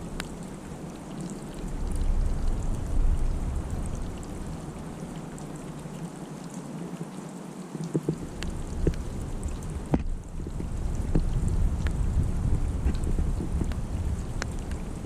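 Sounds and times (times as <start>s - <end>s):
flakes and drips ticking: 0.0s - 15.0s
snowfall hiss: 0.0s - 15.0s
low rumble: 1.6s - 5.8s.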